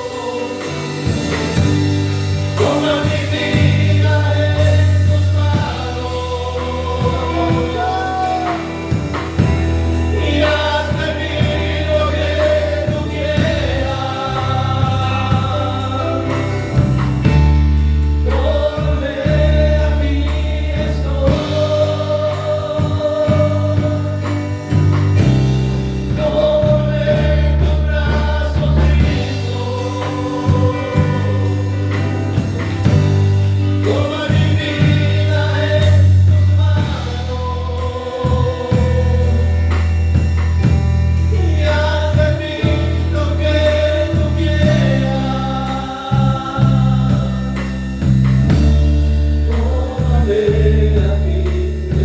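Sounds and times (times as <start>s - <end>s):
held vocal notes: 0.0s - 40.4s
steady bass line: 0.0s - 52.0s.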